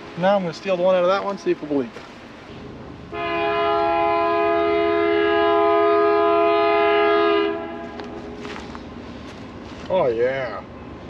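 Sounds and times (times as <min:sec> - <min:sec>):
horn blast: 0:03.1 - 0:08.6.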